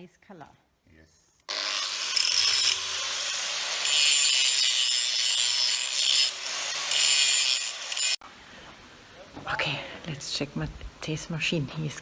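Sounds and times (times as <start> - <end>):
wire brush scraping iron: 1.5 - 8.2.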